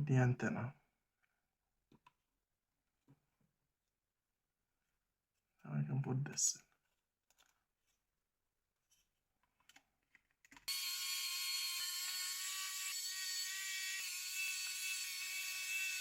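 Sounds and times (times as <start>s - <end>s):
small high-speed motor whining: 10.7s - 16.0s.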